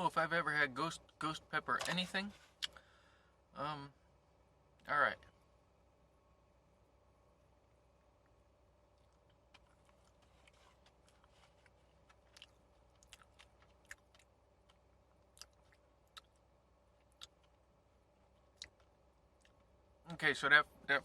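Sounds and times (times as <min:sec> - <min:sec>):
mouth clicks and smacks: 0:08.2 - 0:17.6, 0:18.4 - 0:19.7
faint chewing: 0:08.2 - 0:19.8.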